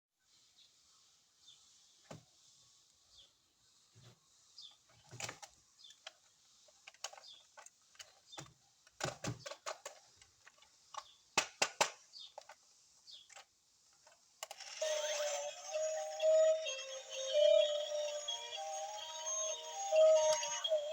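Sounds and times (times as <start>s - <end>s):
music with held notes: 14.8s - 20.9s.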